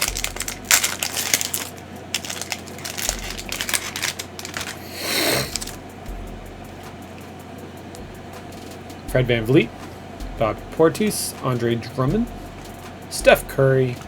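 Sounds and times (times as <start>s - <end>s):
plastic wrapper crinkling: 0.0s - 5.8s.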